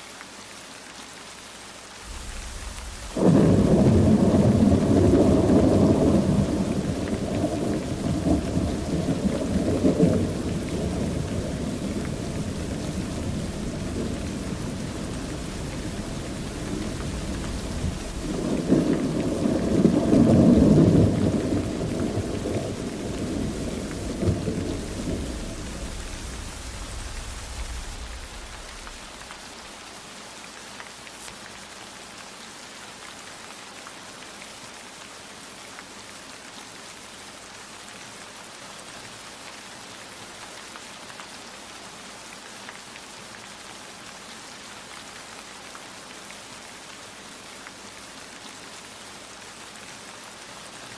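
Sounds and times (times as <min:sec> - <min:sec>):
steady rain: 0:00.0 - 0:50.9
thunder rumbling: 0:02.1 - 0:29.5.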